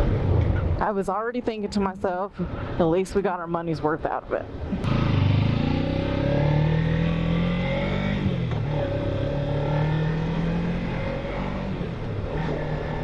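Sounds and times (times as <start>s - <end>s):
motorcycle engine revving: 4.8s - 13.0s.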